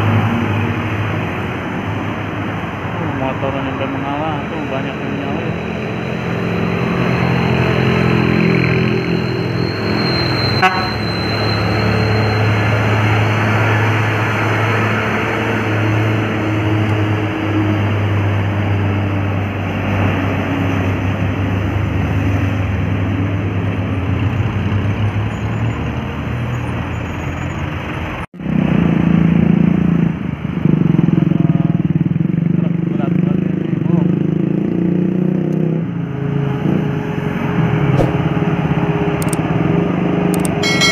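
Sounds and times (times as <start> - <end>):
large vehicle engine droning: 0.0 - 40.9
loud engine: 0.0 - 40.9
sharp click: 39.2 - 39.4, 40.3 - 40.6.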